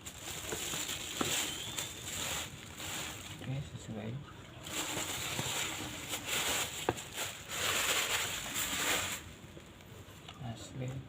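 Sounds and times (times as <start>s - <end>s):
packaging rustling and scraping: 0.0s - 3.6s, 4.6s - 9.7s.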